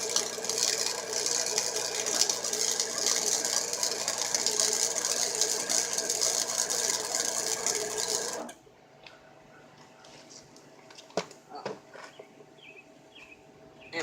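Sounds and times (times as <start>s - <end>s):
welding arc crackling: 0.0s - 8.5s.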